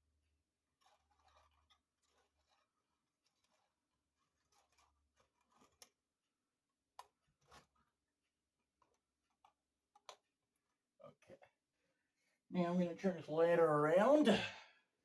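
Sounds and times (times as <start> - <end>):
screwdriver scraping and clicking: 0.8 - 6.0.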